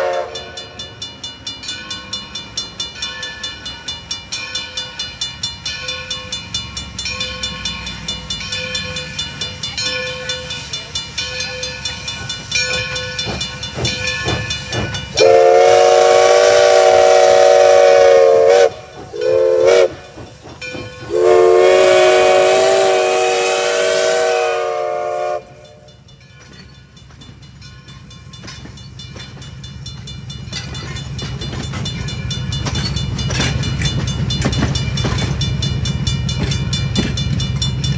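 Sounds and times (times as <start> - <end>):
steam whistle blasts: 0.0 - 0.8, 15.1 - 20.1, 21.0 - 25.9
steam locomotive exhaust beat: 0.0 - 37.9
train rumble: 0.0 - 37.9.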